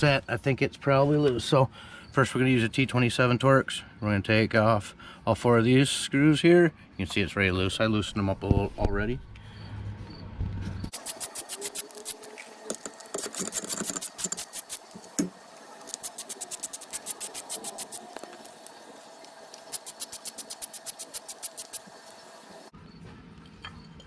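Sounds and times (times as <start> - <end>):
ratchet clicking: 10.9 - 15.3, 15.9 - 18.7, 19.6 - 21.9.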